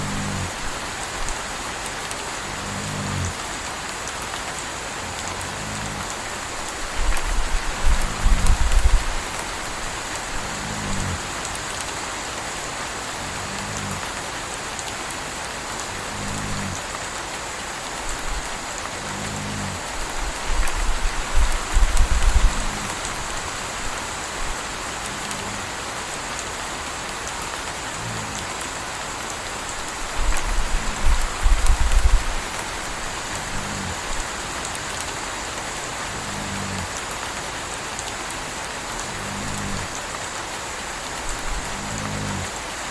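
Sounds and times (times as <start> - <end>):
puppy snoring: 0.0 - 0.8, 2.4 - 3.4, 5.1 - 6.3, 10.0 - 11.2, 13.2 - 14.1, 16.0 - 16.8, 18.2 - 23.5, 33.2 - 34.2, 36.1 - 36.9, 39.0 - 39.9, 41.3 - 42.5
deep low rumbles: 0.0 - 1.0, 5.1 - 11.3, 18.2 - 24.0, 30.1 - 34.2
steady rain falling: 0.0 - 42.9.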